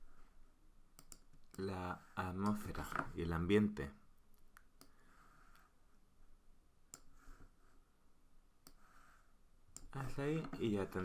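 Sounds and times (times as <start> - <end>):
computer mouse clicks: 0.9 - 1.6, 6.9 - 7.1, 8.6 - 8.8, 9.7 - 9.9.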